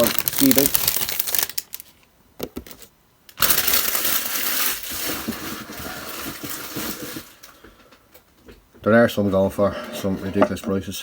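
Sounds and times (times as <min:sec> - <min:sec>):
packaging rustling: 0:00.0 - 0:02.1, 0:03.4 - 0:07.4.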